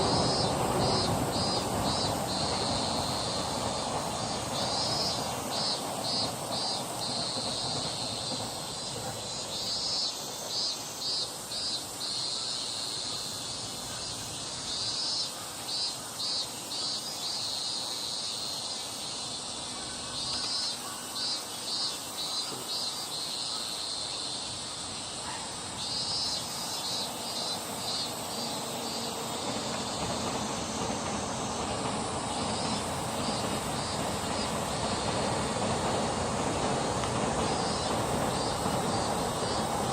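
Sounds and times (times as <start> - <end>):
insect chirping: 0.0 - 39.9.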